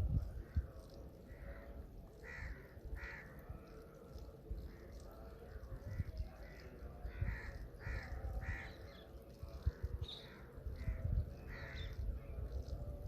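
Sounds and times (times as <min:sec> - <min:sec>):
crows cawing: 0:01.3 - 0:03.8, 0:06.4 - 0:09.0, 0:10.2 - 0:12.0.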